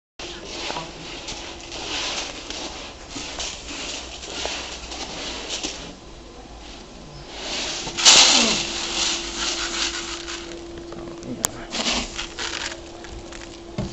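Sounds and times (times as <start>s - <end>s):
sorting machine hiss and hum: 0.2s - 6.0s, 6.6s - 13.9s
loud hissing burst: 7.3s - 10.7s.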